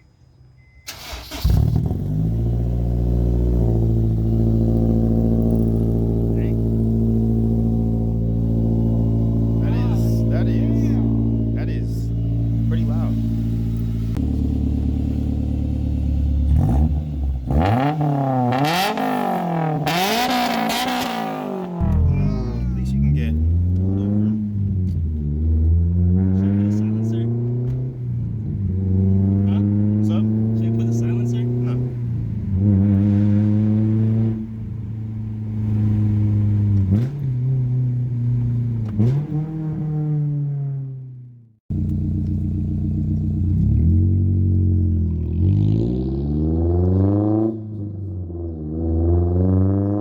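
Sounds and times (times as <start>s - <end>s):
car engine revving: 0.9s - 50.0s
low exhaust drone: 1.6s - 19.9s, 41.7s - 45.8s.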